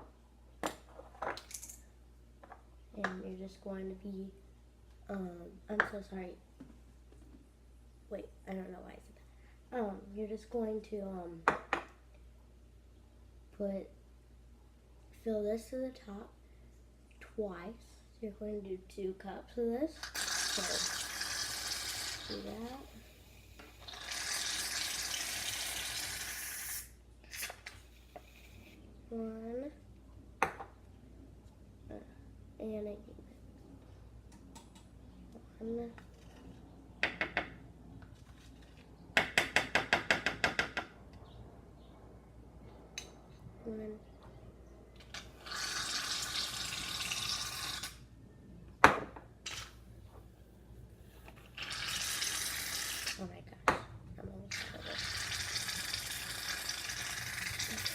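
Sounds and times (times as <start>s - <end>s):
aerosol can hissing: 23.9s - 28.8s.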